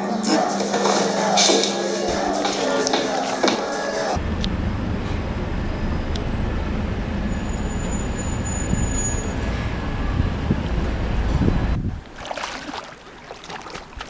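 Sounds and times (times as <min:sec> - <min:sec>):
steady low rumble: 0:04.2 - 0:12.0.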